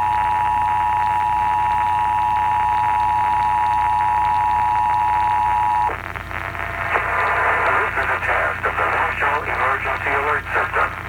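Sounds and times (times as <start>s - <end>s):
two-tone alarm: 0.0s - 5.9s
faint radio hiss: 3.8s - 11.0s.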